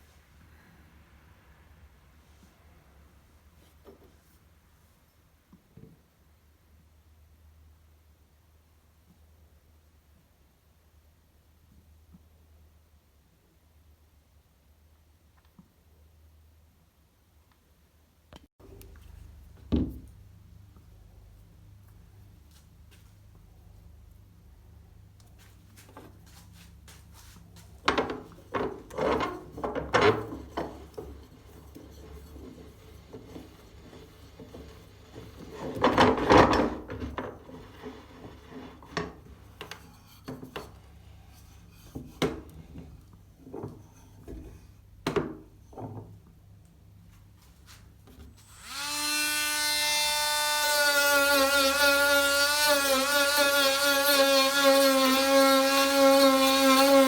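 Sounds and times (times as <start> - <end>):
tools knocking and scraping: 25.8 - 46.2
electric power tool whining: 48.4 - 57.0.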